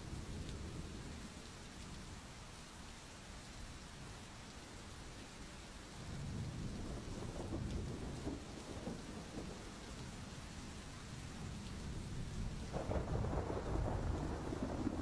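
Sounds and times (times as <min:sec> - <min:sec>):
steady rain: 0:00.0 - 0:15.0
low rumble of thunder: 0:06.0 - 0:15.0.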